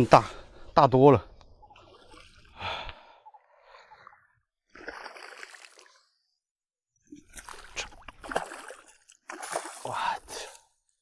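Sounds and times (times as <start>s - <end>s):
water splashing from thrashing fish: 1.7s - 2.6s, 4.7s - 6.0s, 7.2s - 10.0s.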